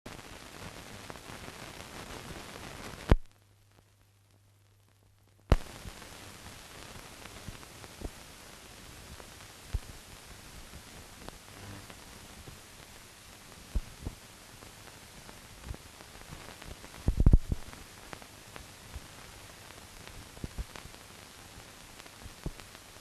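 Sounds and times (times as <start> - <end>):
film soundtrack hiss and crackle: 0.1 - 23.0
loud pops: 5.5 - 8.2, 15.6 - 18.2.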